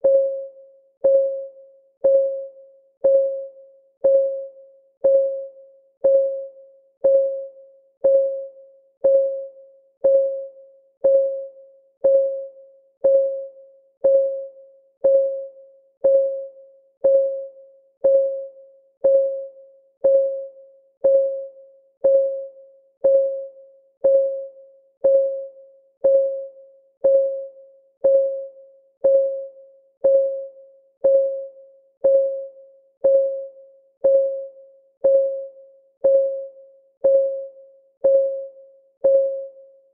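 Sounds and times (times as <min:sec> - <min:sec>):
countdown timer ticking: 0:02.0 - 0:02.4, 0:03.0 - 0:04.4, 0:05.0 - 0:39.6.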